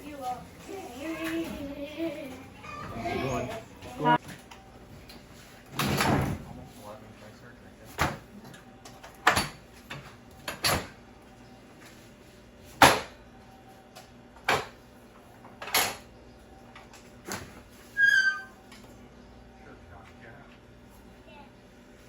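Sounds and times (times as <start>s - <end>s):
short high squeak: 17.9s - 18.7s.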